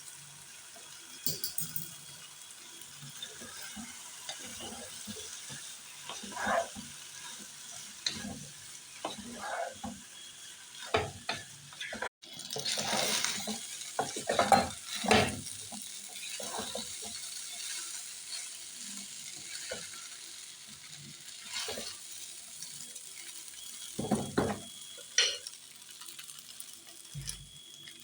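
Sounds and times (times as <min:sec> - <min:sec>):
rice sizzling in a pan: 0:00.0 - 0:28.0
spatula scraping a pan: 0:03.1 - 0:20.1, 0:21.3 - 0:22.4.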